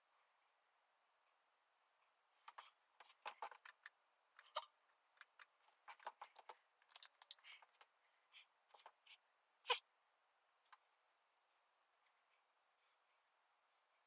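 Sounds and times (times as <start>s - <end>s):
small objects clicking and tapping: 2.5s - 7.9s.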